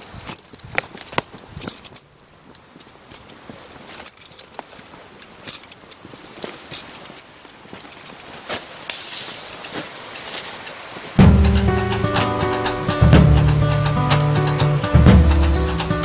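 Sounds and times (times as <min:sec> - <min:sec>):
rustling with crackles and clicks: 0:00.0 - 0:16.0
music with strummed guitar: 0:11.2 - 0:16.0.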